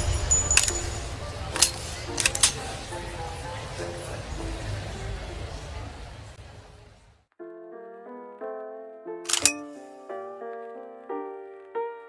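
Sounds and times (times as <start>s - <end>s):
rifle bolt clack: 0.5s - 0.9s, 1.6s - 2.6s, 9.3s - 9.7s
sustained piano chords: 7.4s - 12.0s.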